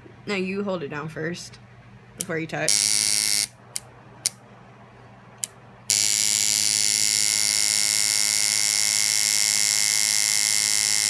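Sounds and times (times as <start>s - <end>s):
tattoo machine buzzing: 2.7s - 3.6s, 5.9s - 11.0s.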